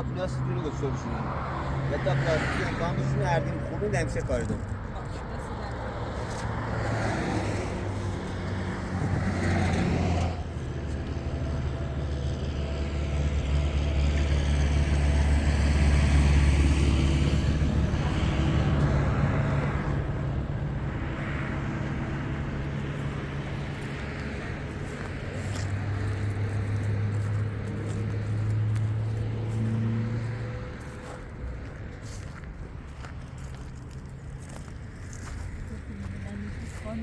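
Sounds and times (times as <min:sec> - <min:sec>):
vehicle engine running: 0:07.6 - 0:37.0.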